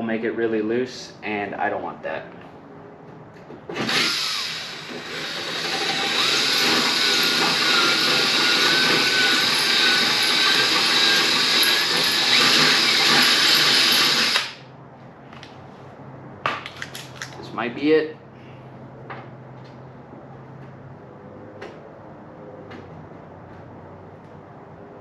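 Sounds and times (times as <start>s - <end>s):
power drill into sheet metal: 3.7s - 14.7s.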